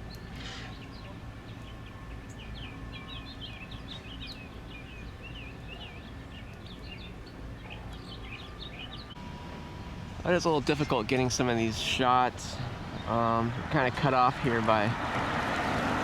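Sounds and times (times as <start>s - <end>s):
small birds chirping: 0.0s - 9.2s, 10.3s - 14.2s.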